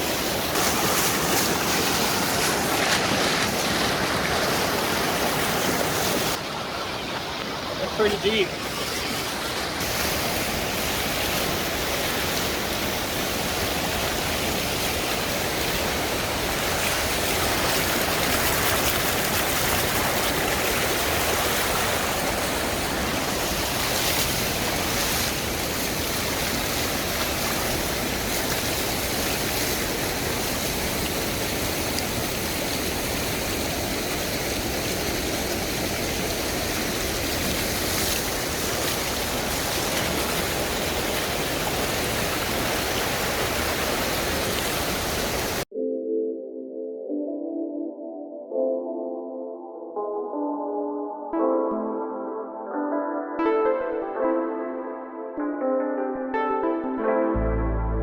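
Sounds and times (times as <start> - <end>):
flood water rushing: 0.0 - 45.7.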